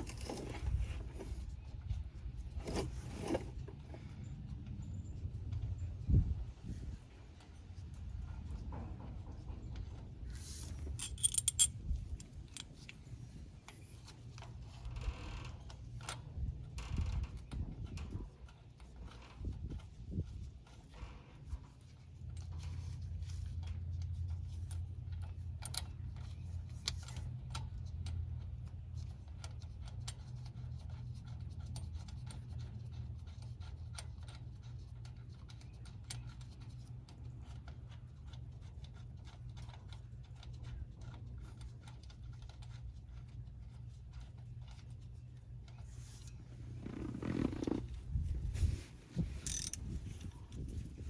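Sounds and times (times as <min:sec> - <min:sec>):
tools clicking and scraping: 0:00.0 - 0:01.5, 0:10.3 - 0:14.8, 0:22.2 - 0:47.9, 0:48.6 - 0:50.9
steady low rumble: 0:40.2 - 0:51.0.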